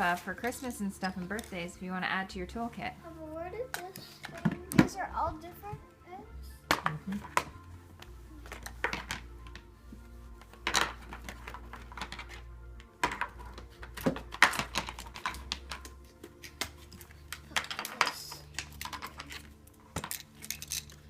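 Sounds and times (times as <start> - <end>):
background music: 0.0 - 21.0
small tool parts rattling: 17.3 - 21.0.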